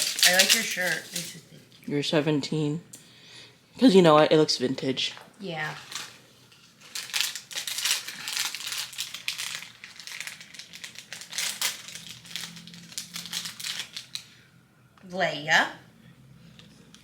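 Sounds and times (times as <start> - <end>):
gift packaging crinkling: 0.0 - 1.7, 5.6 - 14.5.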